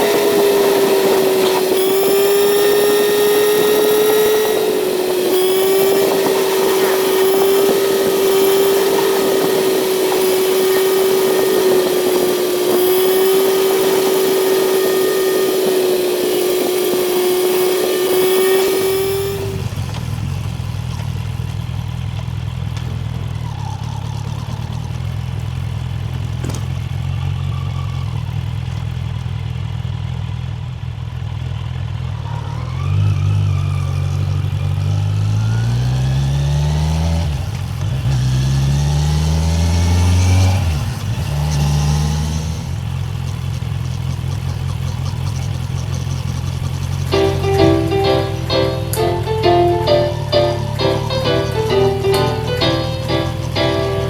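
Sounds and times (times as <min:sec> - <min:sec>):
high-pitched whine: 0:00.0 - 0:20.0
motorcycle engine revving: 0:00.0 - 0:26.7.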